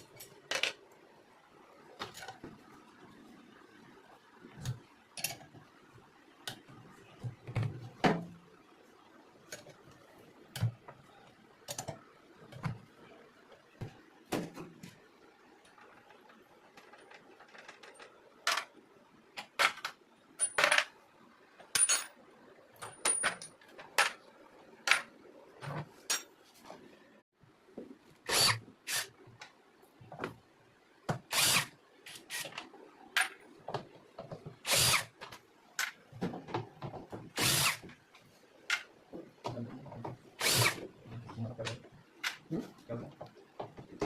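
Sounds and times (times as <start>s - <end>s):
power drill short bursts: 28.3s - 29.1s, 31.3s - 32.5s, 34.6s - 35.1s, 37.4s - 37.8s, 40.4s - 40.8s.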